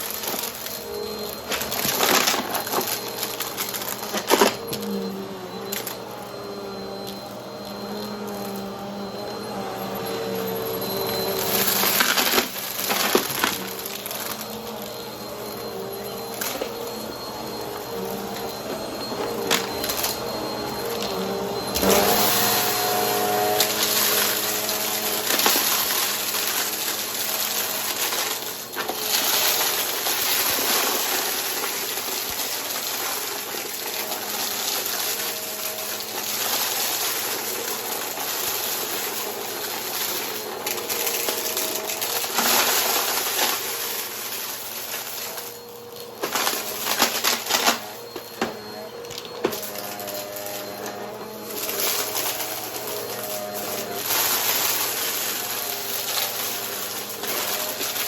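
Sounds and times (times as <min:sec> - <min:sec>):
vacuum cleaner running: 0:00.0 - 0:58.0
debris crackling in brushroll: 0:51.4 - 0:58.0.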